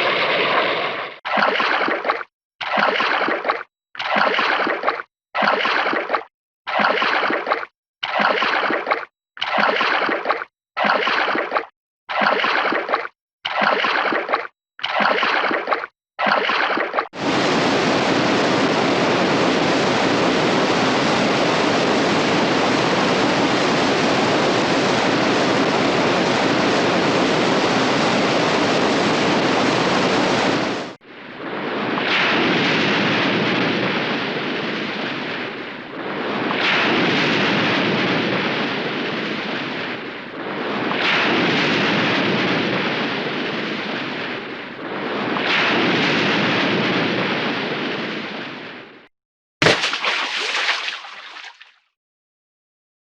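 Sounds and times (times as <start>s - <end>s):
waves surging and washing back: 0.0s - 1.1s, 17.2s - 48.9s
water rushing: 49.6s - 51.6s.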